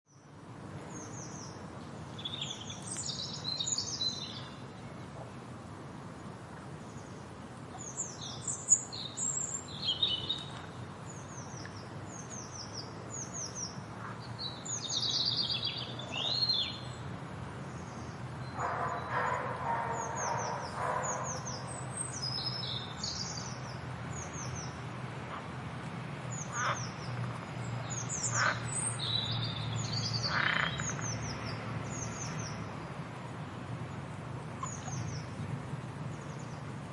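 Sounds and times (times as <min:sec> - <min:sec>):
frogs chirping: 0:30.2 - 0:31.2.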